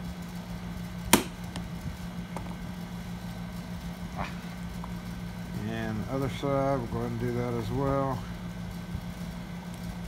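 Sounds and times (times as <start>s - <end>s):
low hum: 0.0s - 10.0s.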